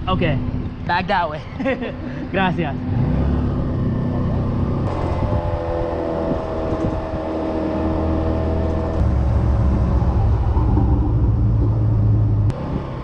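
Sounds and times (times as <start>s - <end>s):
motor scooter engine rumble: 3.1s - 13.0s.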